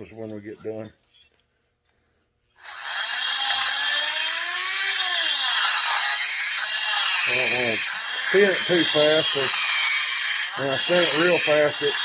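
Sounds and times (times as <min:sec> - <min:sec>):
rotary tool grinding metal: 0:02.6 - 0:12.0.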